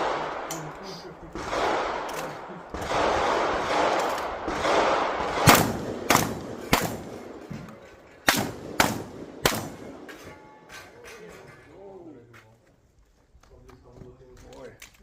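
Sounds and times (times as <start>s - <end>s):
shotgun shots: 0.0s - 10.3s.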